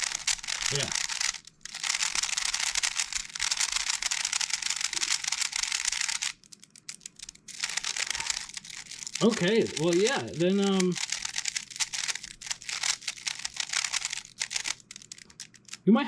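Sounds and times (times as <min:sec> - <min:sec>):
puzzle cube clicking turns: 0:00.0 - 0:15.9.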